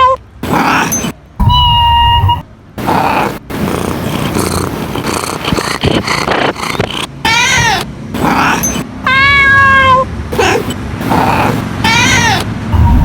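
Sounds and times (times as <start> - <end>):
cat meowing: 0.0 - 13.0.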